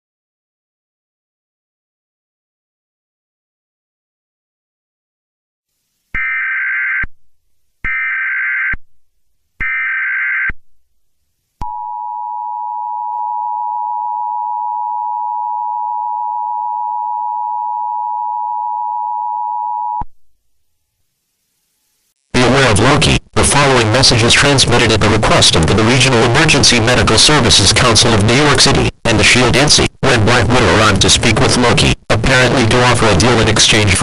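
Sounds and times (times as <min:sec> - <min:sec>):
two-tone attention signal: 0:11.6 - 0:20.0.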